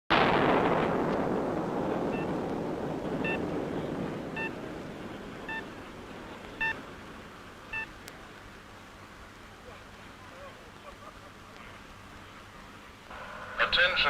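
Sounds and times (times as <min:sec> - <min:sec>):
explosion rumble: 0:00.1 - 0:08.0
short electronic beeps: 0:05.5 - 0:05.7, 0:06.6 - 0:06.8.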